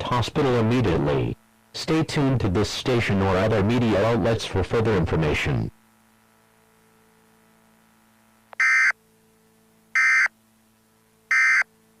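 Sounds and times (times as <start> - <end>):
faint steady hum: 0.0 - 12.0
digital data tone bursts: 8.6 - 9.0, 10.0 - 10.3, 11.3 - 11.7.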